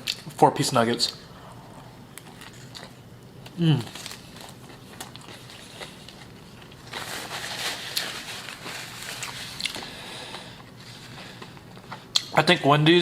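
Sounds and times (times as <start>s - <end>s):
chewing and biting food: 4.0s - 7.0s.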